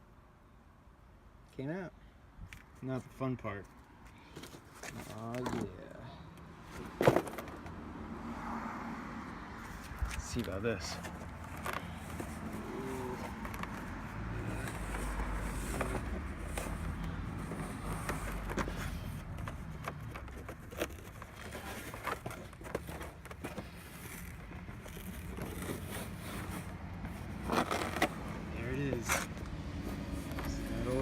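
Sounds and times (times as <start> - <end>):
fabric scraping and crackling: 9.7 - 31.0.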